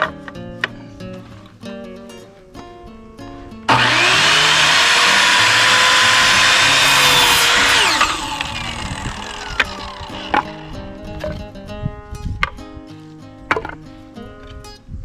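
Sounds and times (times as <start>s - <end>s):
electric power saw cutting wood: 3.7s - 10.8s.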